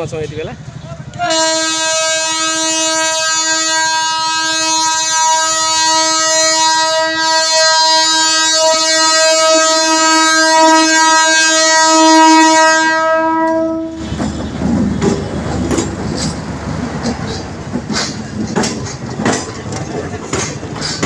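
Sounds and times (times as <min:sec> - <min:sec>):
train horn blast: 0:01.1 - 0:14.1
train wheels clattering on track: 0:13.4 - 0:21.0.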